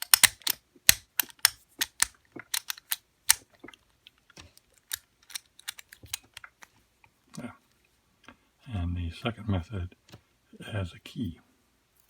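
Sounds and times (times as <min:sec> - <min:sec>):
padlock metal clicks: 0:00.0 - 0:03.4, 0:04.8 - 0:06.5.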